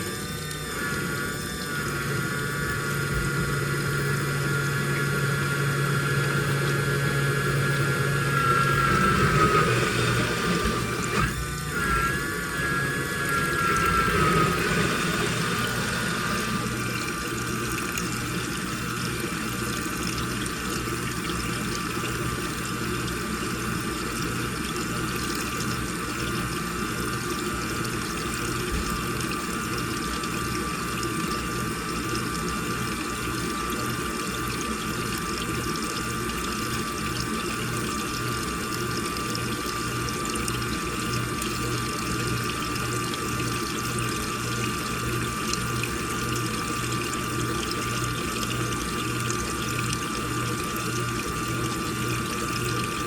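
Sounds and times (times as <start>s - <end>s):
low pulsing hum: 0.0s - 23.3s
washing machine water rushing: 0.0s - 53.0s
steady high tone: 8.1s - 18.0s.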